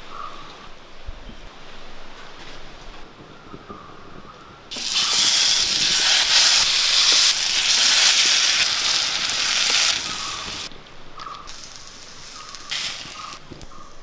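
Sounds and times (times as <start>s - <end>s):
pineapple sizzling in hot oil: 4.7s - 10.7s, 11.5s - 13.8s.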